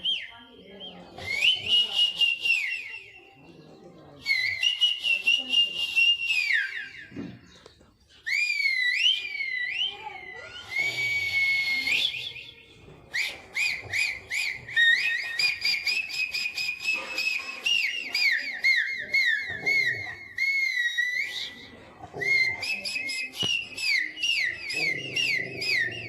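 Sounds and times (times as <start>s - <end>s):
high whistle sounds: 8.3s - 21.7s.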